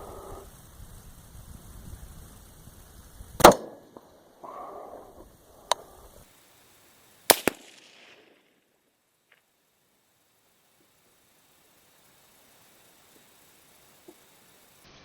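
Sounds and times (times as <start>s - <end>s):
supersonic bullet cracks: 3.4s - 4.1s, 7.3s - 8.7s.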